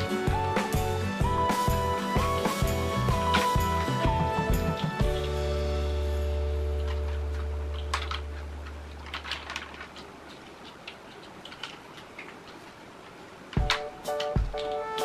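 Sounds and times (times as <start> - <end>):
plastic toys clicking: 6.8 - 15.0.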